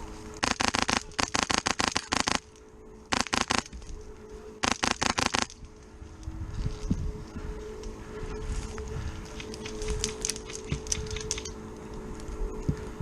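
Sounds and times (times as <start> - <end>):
airsoft rifle rapid shots: 0.4 - 2.5, 3.1 - 3.7, 4.6 - 5.5.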